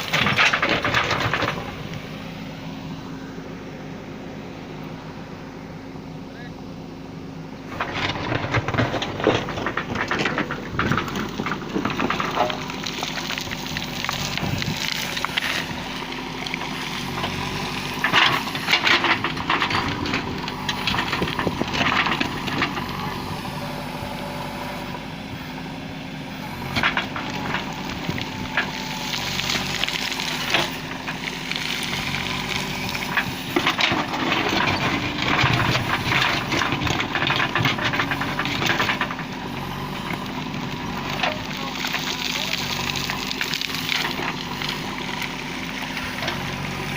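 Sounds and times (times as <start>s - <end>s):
diesel engine running: 0.0s - 46.9s
cracking and crunching: 7.7s - 23.3s, 26.5s - 46.9s.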